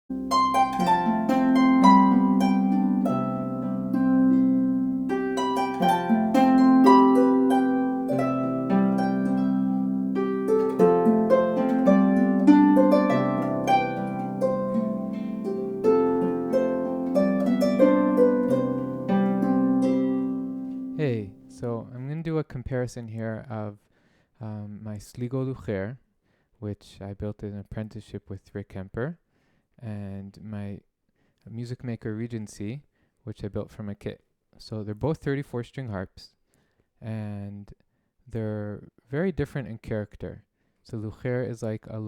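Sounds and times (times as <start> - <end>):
harp melody: 0.1 - 21.6
harp bass notes: 0.1 - 21.7.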